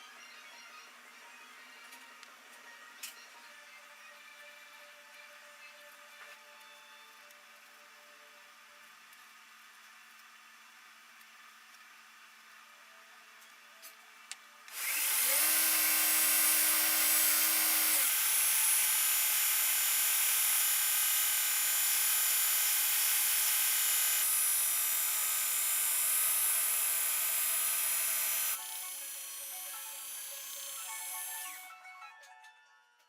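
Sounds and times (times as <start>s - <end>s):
power tool motor whining: 14.7s - 31.7s.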